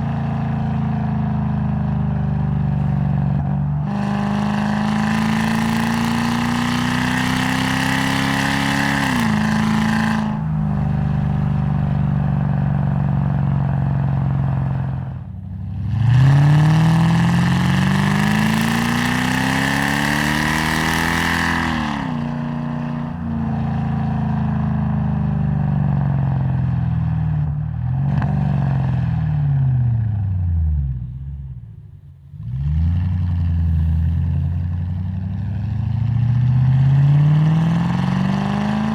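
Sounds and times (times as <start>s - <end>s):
car engine revving: 2.8s - 14.7s, 15.7s - 23.8s, 27.9s - 38.9s.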